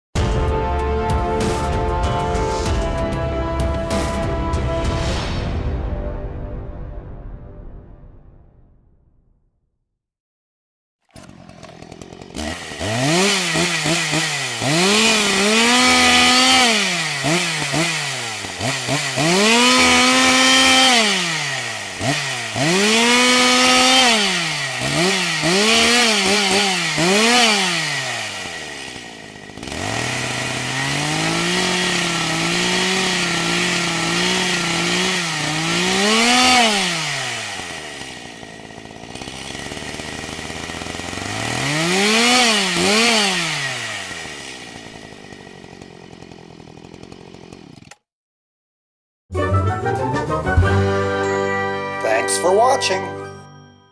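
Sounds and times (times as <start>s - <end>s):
chainsaw engine revving: 0.6s - 5.0s, 11.0s - 48.0s.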